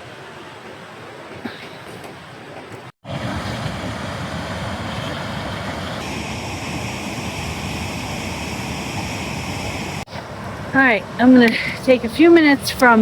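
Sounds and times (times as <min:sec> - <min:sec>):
fast-flowing water rushing: 0:03.0 - 0:13.0.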